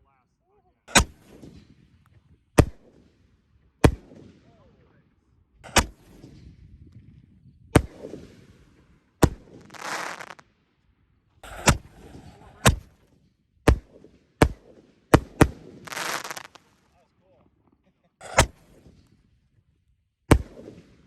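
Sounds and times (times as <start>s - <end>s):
firework bangs: 0.9s - 1.7s, 5.6s - 6.5s, 9.2s - 10.4s, 11.4s - 13.0s, 13.7s - 16.8s, 18.2s - 19.0s, 20.3s - 20.9s
firework crackling hiss: 9.5s - 10.4s, 11.5s - 12.8s, 15.9s - 16.7s.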